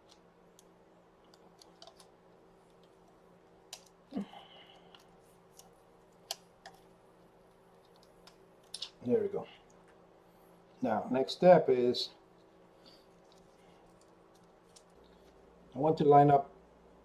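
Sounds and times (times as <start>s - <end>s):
faint clicks and taps: 0.0s - 4.0s, 4.7s - 9.0s.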